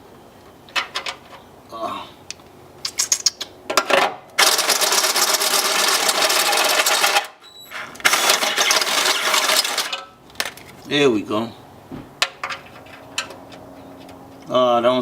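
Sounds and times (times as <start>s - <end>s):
power drill cutting metal: 4.4s - 9.9s.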